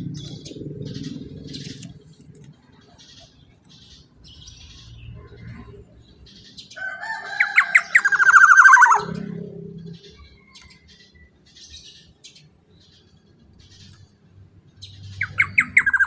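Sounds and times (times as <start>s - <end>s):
soft bird chirps: 0.0s - 16.0s
bird calling rapid notes: 7.4s - 9.3s, 15.2s - 16.0s.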